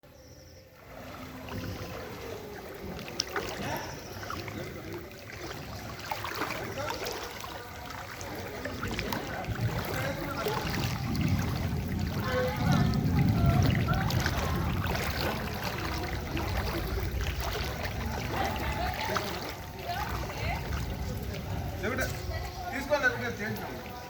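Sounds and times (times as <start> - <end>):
floodwater rushing: 0.4 - 24.0
low rumble: 8.7 - 22.7.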